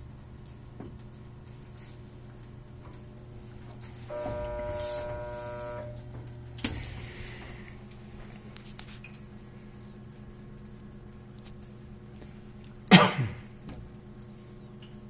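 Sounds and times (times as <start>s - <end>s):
dishwasher humming: 0.7s - 10.3s
buzzing tone: 4.1s - 6.2s.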